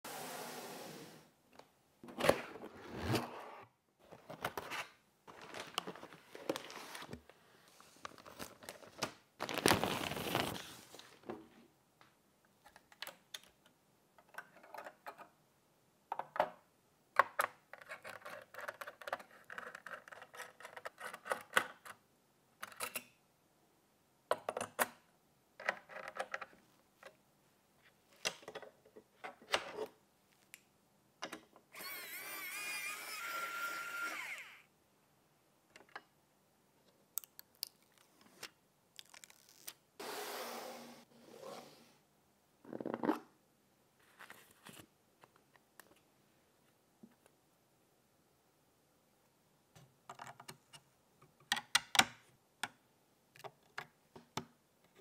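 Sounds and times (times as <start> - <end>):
packaging rustling: 5.3 - 7.2, 8.0 - 11.2.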